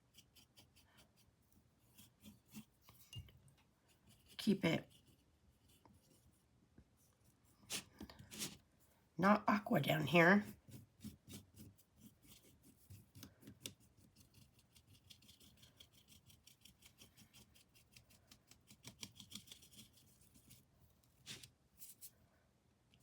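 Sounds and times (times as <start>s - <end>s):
paintbrush strokes on canvas: 3.9s - 8.9s, 19.4s - 22.2s.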